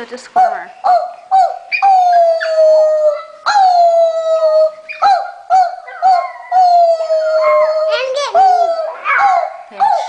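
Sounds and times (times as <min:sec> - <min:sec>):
puppy howling and yelping: 0:00.4 - 0:10.0.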